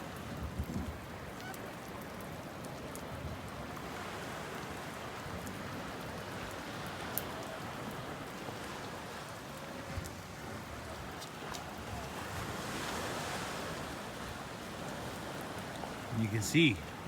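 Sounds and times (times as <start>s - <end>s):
steady rain hissing: 11.8s - 17.0s.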